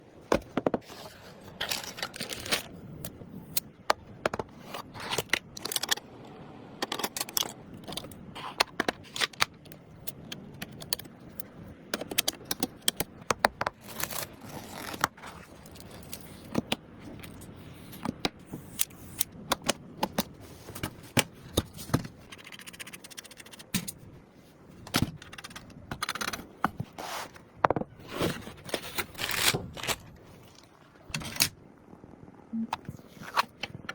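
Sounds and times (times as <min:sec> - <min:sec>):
packaging rustling: 0:00.4 - 0:02.8.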